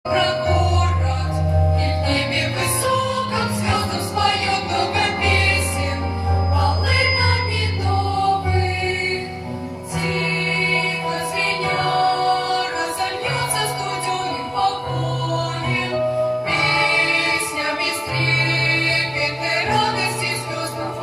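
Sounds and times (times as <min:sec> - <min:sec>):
choir singing held notes: 0:00.1 - 0:21.0.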